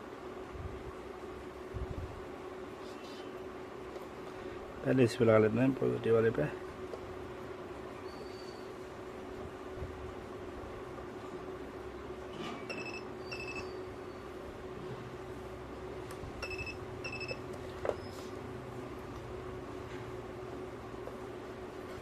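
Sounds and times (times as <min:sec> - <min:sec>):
steady electrical hum: 0:00.0 - 0:22.0
spot welder beeping: 0:12.6 - 0:14.3, 0:16.4 - 0:18.1.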